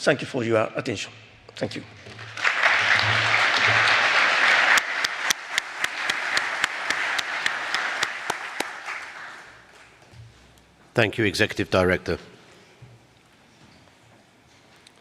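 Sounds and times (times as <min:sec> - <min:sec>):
audience applauding: 0:02.1 - 0:10.0.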